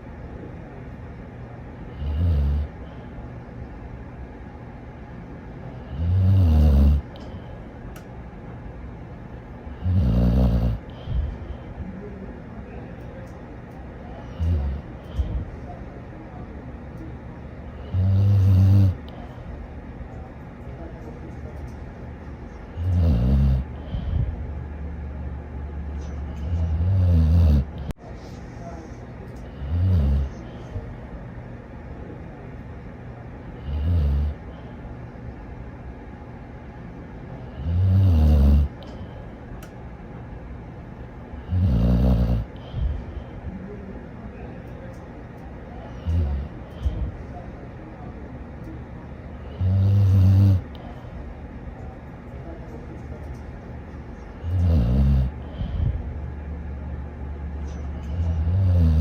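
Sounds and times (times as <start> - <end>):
low background noise: 0.0 - 59.0
dog snoring: 1.9 - 2.8, 5.8 - 7.2, 9.7 - 11.4, 14.3 - 15.5, 17.8 - 19.1, 22.7 - 24.3, 26.1 - 27.9, 29.5 - 30.6, 33.6 - 34.5, 37.4 - 39.0, 41.4 - 43.1, 46.0 - 47.1, 49.5 - 50.8, 54.4 - 56.0, 58.0 - 59.0.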